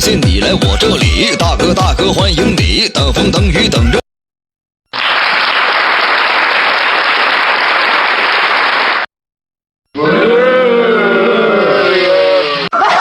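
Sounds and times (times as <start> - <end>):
canned applause: 4.9 - 9.1
recorded laughter: 12.7 - 13.0.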